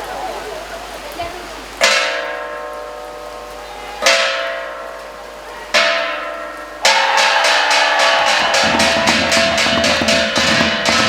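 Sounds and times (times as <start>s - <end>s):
gamelan keys struck: 5.7s - 11.0s.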